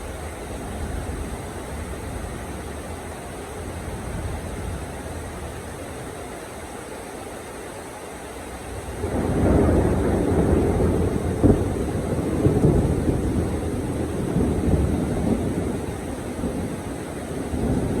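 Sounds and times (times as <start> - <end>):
heavy rain: 0.0 - 18.0
thunder rumbling: 8.9 - 18.0.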